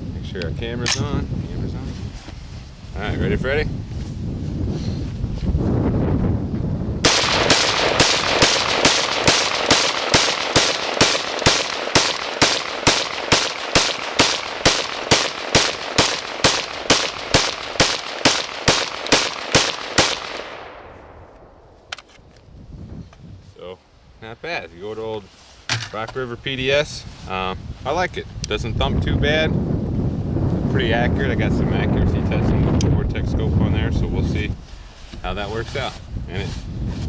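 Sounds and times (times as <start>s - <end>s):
rifle shots: 7.0s - 21.6s
gunshot echo: 7.1s - 21.8s.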